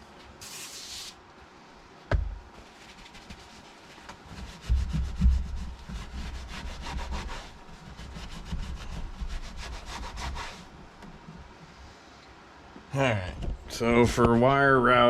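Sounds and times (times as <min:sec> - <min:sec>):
rubbing and low knocks: 0:04.2 - 0:10.4.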